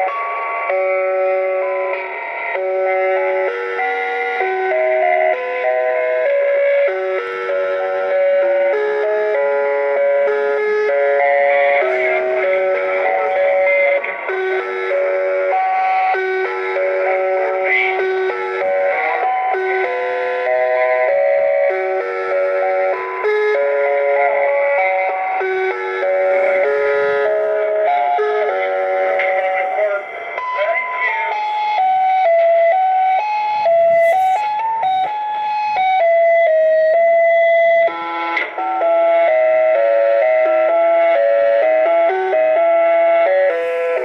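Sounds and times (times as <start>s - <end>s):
tinny electronic toy melody: 0.0s - 44.0s.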